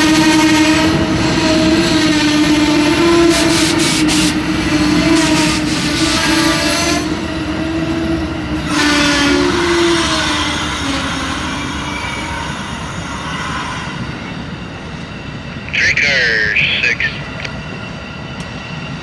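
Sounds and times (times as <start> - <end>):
train rumble: 0.0 - 19.0
locomotive air horn blasts: 8.7 - 10.8.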